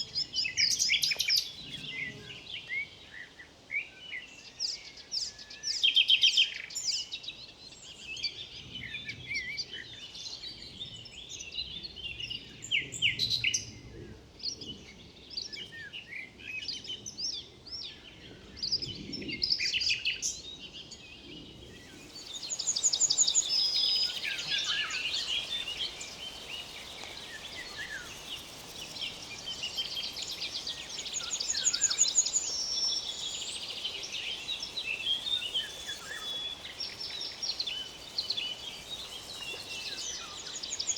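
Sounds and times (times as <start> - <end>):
songbirds chirping and trilling: 0.0 - 3.4, 6.7 - 40.9
river water flowing: 21.8 - 40.9.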